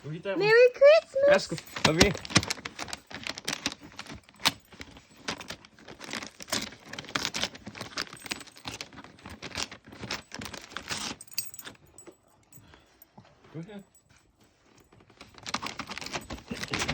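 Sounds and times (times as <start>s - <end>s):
wrapping paper rustling and crinkling: 1.2s - 11.4s, 14.5s - 16.9s.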